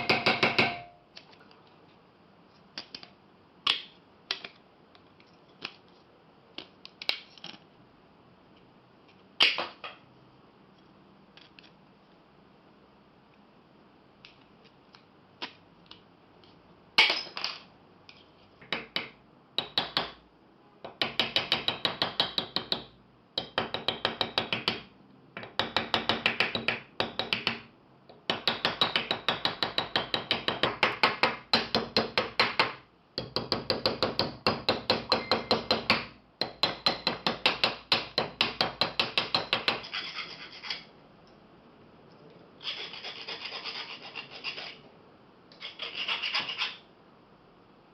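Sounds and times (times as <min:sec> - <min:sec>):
fast scraping strokes by hand: 0:39.8 - 0:40.9, 0:42.6 - 0:44.8, 0:45.6 - 0:46.8.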